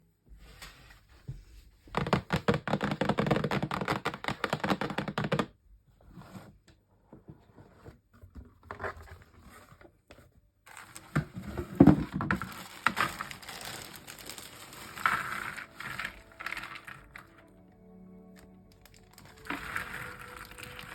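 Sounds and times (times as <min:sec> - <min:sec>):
jigsaw puzzle pieces clattering: 0:10.7 - 0:17.6, 0:18.4 - 0:20.9.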